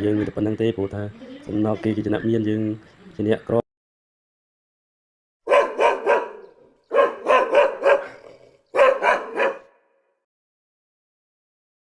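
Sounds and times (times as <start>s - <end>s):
dog barking: 5.5s - 10.0s.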